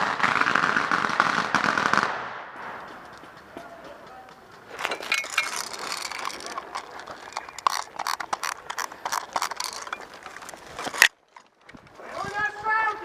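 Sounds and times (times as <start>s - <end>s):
mechanical clicking and clattering: 4.5s - 11.8s.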